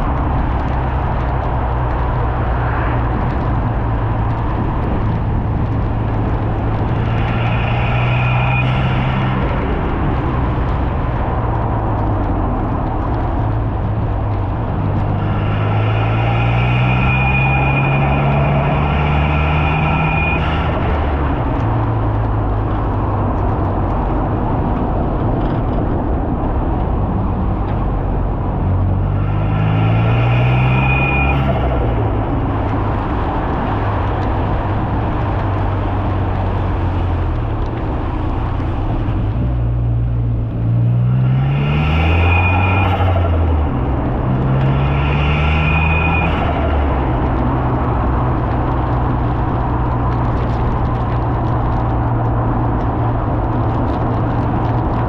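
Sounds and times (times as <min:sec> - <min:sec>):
car engine accelerating: 0:00.0 - 0:55.0
road noise rushing: 0:00.0 - 0:55.0
turbo whistle and flutter: 0:06.9 - 0:09.5, 0:15.3 - 0:20.8, 0:29.5 - 0:32.1.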